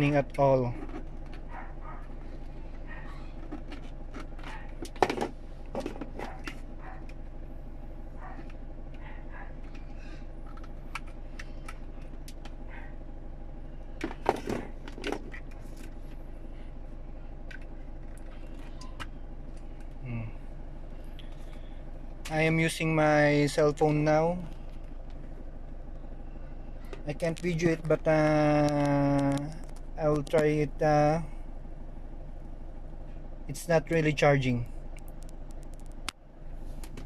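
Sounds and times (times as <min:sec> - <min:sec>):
car engine idling: 0:00.0 - 0:37.0.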